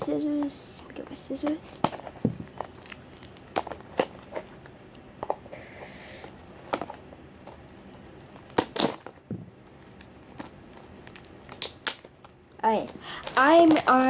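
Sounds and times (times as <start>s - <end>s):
packaging rustling: 1.4s - 4.6s, 6.6s - 14.0s.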